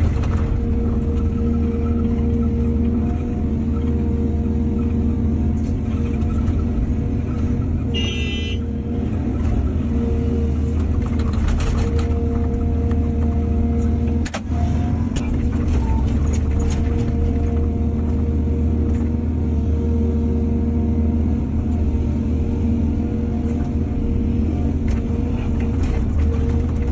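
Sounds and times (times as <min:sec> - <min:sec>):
heavy diesel engine rumbling: 0:00.0 - 0:26.9.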